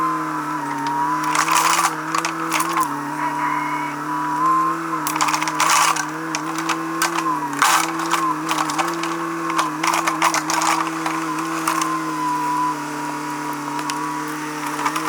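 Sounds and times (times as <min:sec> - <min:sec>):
heavy machine engine running: 0:00.0 - 0:15.0
metallic clanks and rattles: 0:00.7 - 0:03.0, 0:05.0 - 0:12.0.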